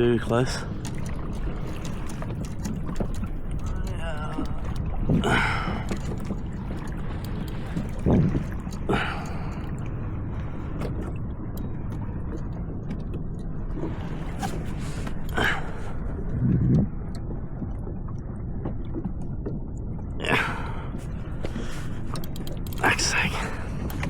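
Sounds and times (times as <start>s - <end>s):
wind and sea rumble: 0.0s - 24.0s.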